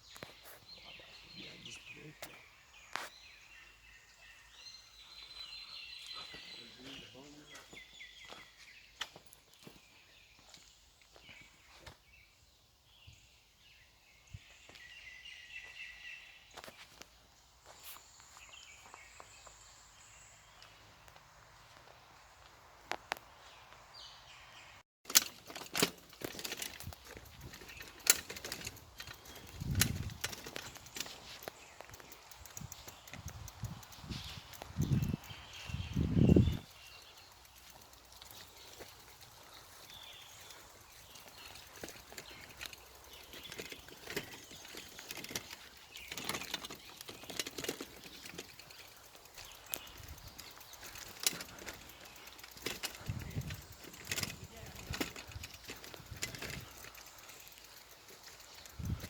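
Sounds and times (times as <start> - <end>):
footsteps on a path: 7.4 - 12.1, 16.5 - 19.7, 25.8 - 59.0
sharp clicks: 25.1 - 39.3.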